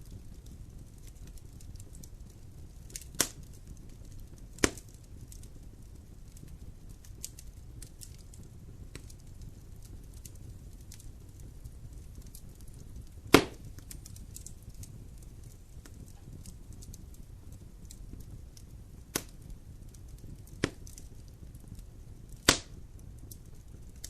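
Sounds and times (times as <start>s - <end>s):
fire crackling: 0.0s - 24.0s
fire flames rumbling: 0.0s - 24.0s
loud sharp pop: 13.3s - 13.6s, 22.4s - 22.8s.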